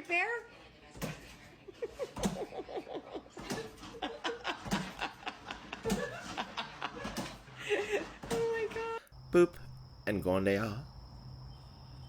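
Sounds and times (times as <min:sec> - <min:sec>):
person laughing: 0:01.8 - 0:08.2.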